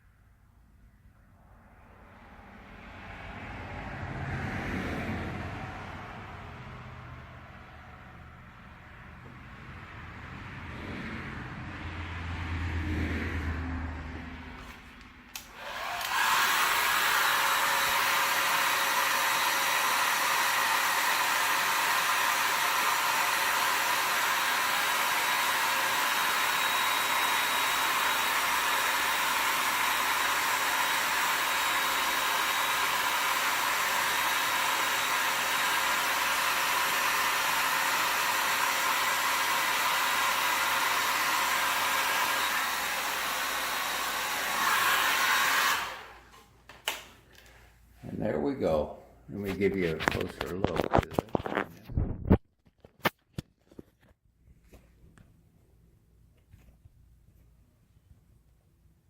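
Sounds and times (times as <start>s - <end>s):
hot-air blower whooshing: 1.4s - 47.6s.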